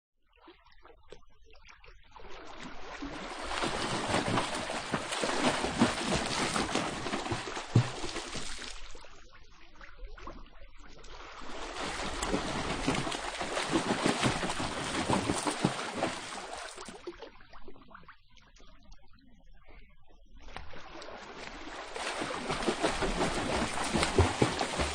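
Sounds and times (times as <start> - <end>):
swimmer splashing in water: 3.2 - 8.4, 11.6 - 16.9, 21.5 - 24.9.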